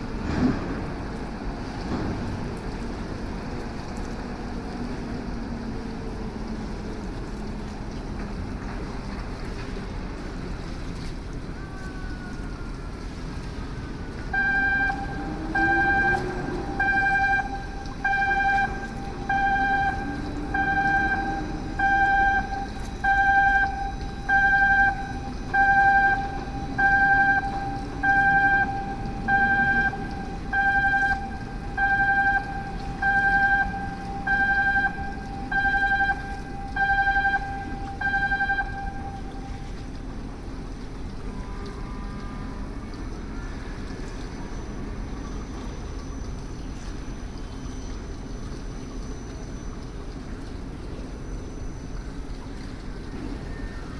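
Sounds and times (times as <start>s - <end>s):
machine engine humming: 13.6s - 41.1s
electronic warning beeps: 14.4s - 39.8s.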